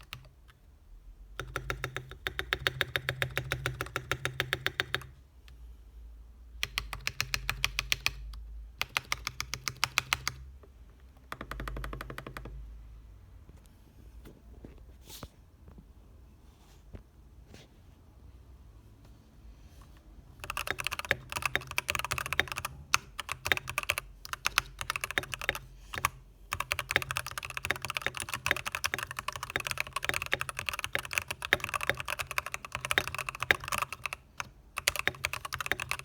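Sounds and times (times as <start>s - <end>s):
fast mechanical keyboard typing: 0.0s - 0.4s, 1.4s - 5.2s, 6.6s - 10.5s, 11.2s - 12.6s, 20.4s - 36.0s.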